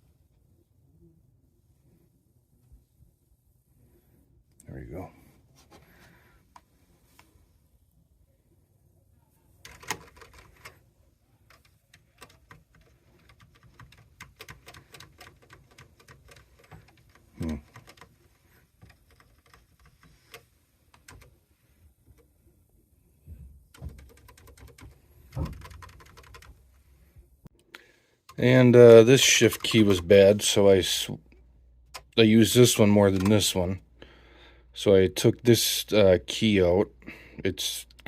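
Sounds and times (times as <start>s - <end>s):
keyboard keys clicking: 9.7s - 10.7s, 11.5s - 18.1s, 23.7s - 26.5s.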